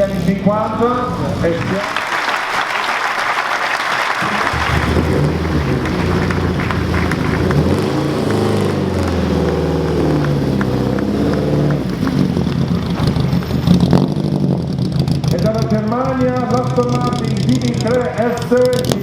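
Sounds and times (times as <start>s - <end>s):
car engine at low revs: 0.0s - 1.8s, 4.5s - 19.0s
applause: 1.4s - 12.7s.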